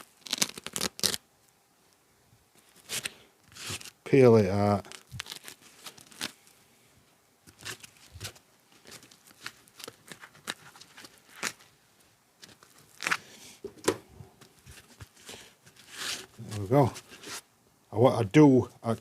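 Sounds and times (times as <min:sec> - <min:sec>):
foam tearing crackles: 0:00.0 - 0:01.2, 0:02.7 - 0:04.0, 0:04.6 - 0:06.5, 0:07.5 - 0:11.7, 0:12.4 - 0:13.3, 0:14.7 - 0:17.4.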